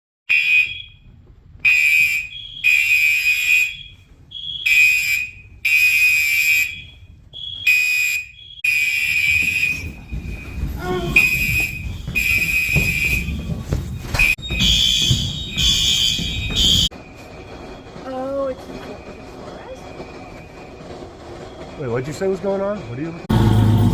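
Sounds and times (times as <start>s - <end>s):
fire alarm blasts: 0.3s - 17.9s
sharp knocks: 9.3s - 16.9s
low rumble of movement: 9.4s - 23.9s.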